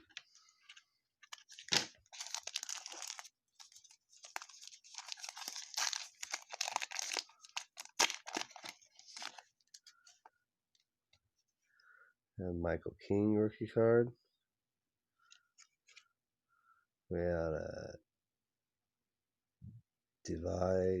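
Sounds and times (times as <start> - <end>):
cards being handled: 0.0 - 9.9
foil wrapper crinkling and tearing: 1.2 - 9.8.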